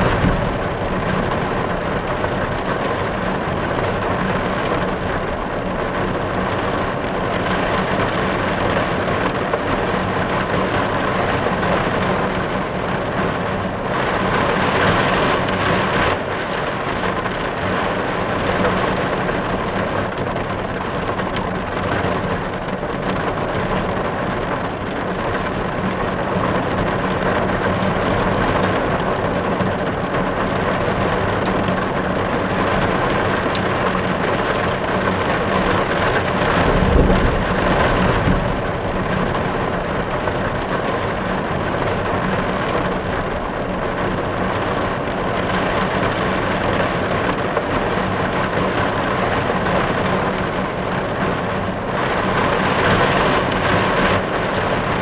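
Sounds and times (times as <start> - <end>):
rain falling on a car: 0.0 - 55.0.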